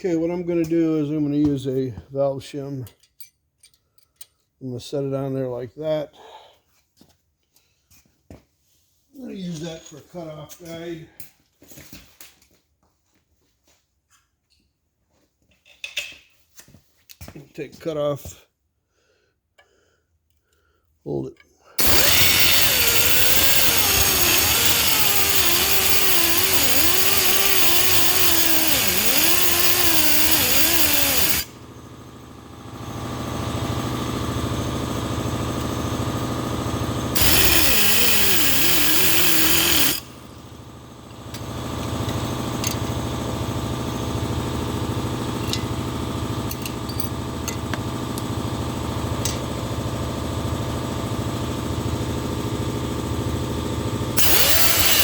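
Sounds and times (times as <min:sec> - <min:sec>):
cutoff wheel cutting steel: 0:21.8 - 0:33.1, 0:36.6 - 0:40.4, 0:54.2 - 0:55.0.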